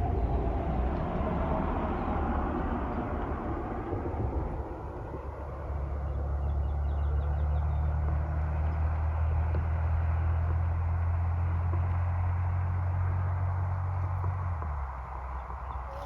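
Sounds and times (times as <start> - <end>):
low engine hum: 0.0 - 16.0
faint bird chirps: 15.6 - 16.0.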